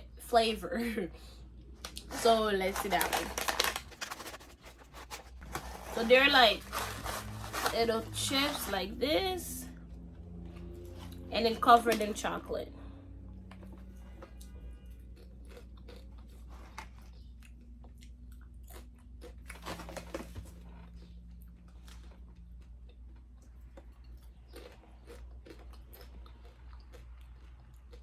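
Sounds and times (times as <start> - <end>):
crunchy chewing: 1.6 - 8.7, 13.4 - 28.0.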